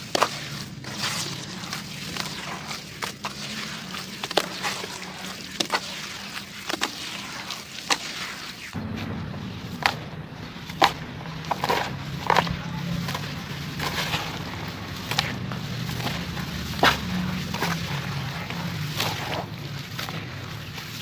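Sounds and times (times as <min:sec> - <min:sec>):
dry dirt crunching by hand: 0:00.0 - 0:21.0
low steady hum: 0:08.7 - 0:21.0.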